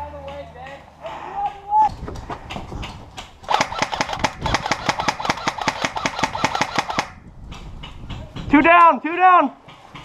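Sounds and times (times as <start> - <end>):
airsoft rifle firing: 3.4 - 7.2.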